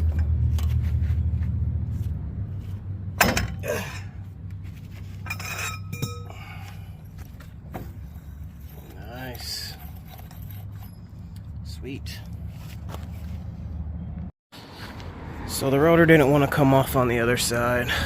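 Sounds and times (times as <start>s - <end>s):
metal tools clinking: 5.1s - 7.3s, 8.0s - 11.6s.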